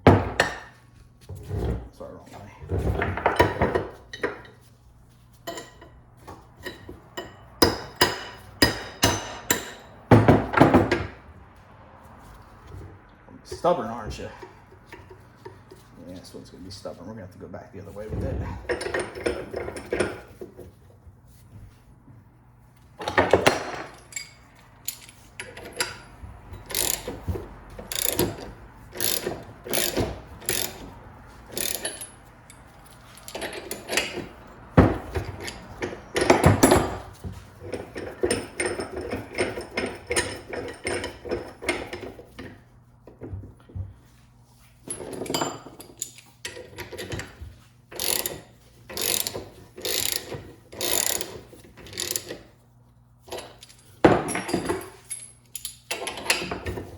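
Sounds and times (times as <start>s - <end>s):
sharp metal clicks and knocks: 31.5s - 42.4s.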